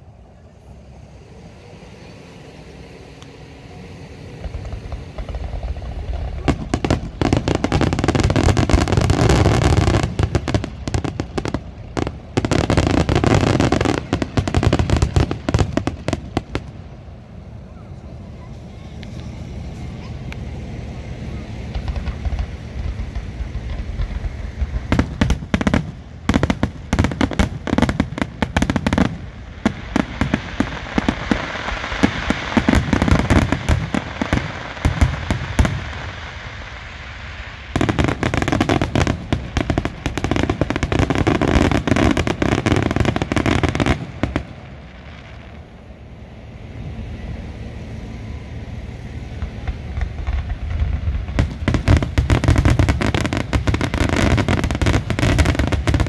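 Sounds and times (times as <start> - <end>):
fireworks bangs and crackling: 0.0 - 56.0.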